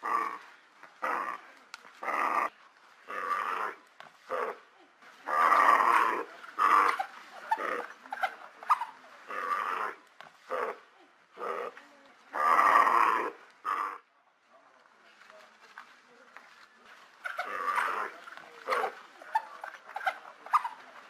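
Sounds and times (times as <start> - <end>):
wild dogs growling: 0.0 - 4.6, 5.2 - 10.8, 11.4 - 14.0, 17.3 - 21.0.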